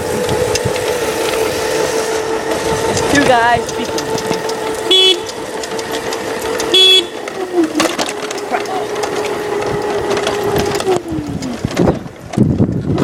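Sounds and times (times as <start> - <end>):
electric motor whine: 0.0 - 13.0
light clicks and rattles: 2.7 - 13.0
scooter horn beep: 4.4 - 5.6, 6.5 - 7.8.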